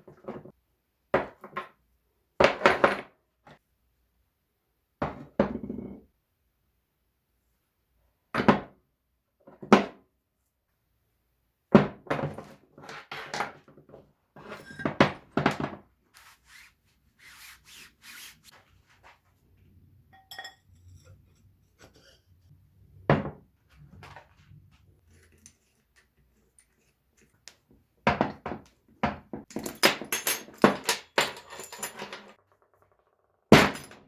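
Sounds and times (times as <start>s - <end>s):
metal scraping: 20.2s - 22.6s
metal parts thunking: 29.5s - 32.4s.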